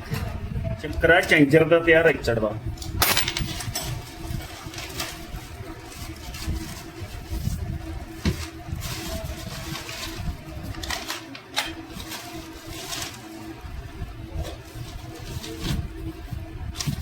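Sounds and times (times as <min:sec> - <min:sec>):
metal parts clicking and knocking: 0:03.0 - 0:03.9.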